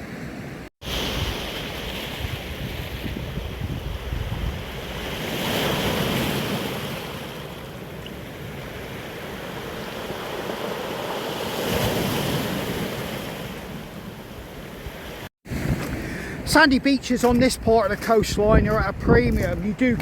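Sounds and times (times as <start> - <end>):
waves washing onto rocky shore: 0.8 - 15.9
wind buffeting microphone: 1.0 - 5.2, 14.8 - 20.0.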